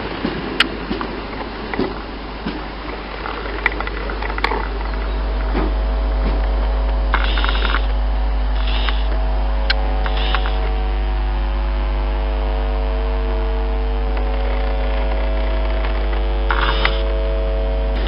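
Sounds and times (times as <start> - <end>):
steady electrical hum: 0.0 - 18.0
faint clicks: 3.2 - 5.6, 8.6 - 10.7.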